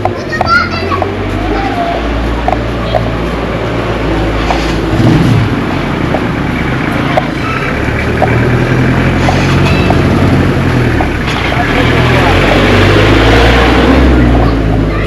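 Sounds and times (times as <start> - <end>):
street noise: 0.0 - 15.0
vehicle engine running: 0.0 - 15.0.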